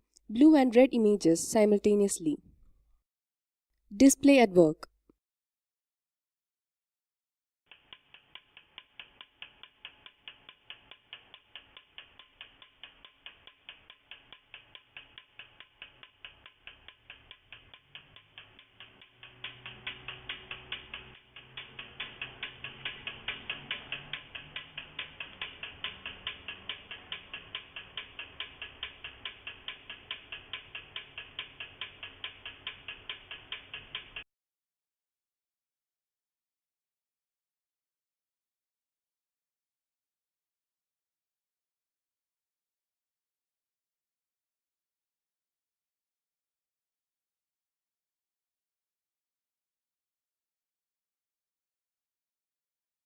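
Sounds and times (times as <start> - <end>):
solenoid valves clicking: 7.7 - 34.2.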